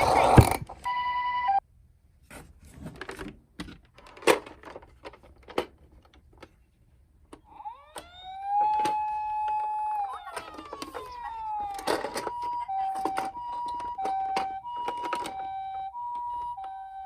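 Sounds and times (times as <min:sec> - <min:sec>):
toy siren wailing: 0:07.4 - 0:17.0.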